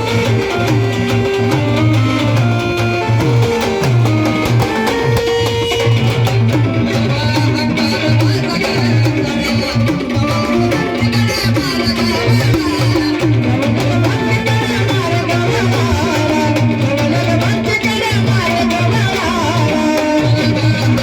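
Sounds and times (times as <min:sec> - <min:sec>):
music with steady percussion: 0:00.0 - 0:21.0.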